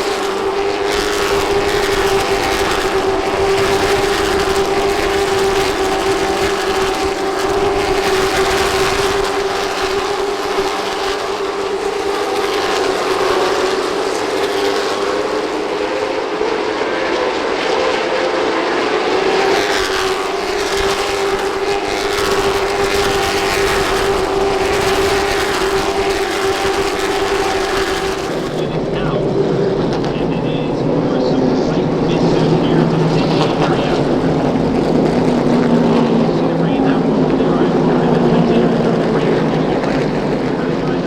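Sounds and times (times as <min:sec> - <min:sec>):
cars sweeping past: 0:00.0 - 0:41.0
race car engines droning: 0:00.0 - 0:41.0.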